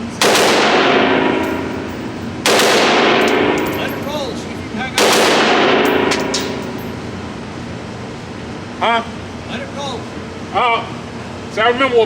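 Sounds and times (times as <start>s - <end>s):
gunshots with echo: 0.2s - 3.9s, 5.0s - 6.7s.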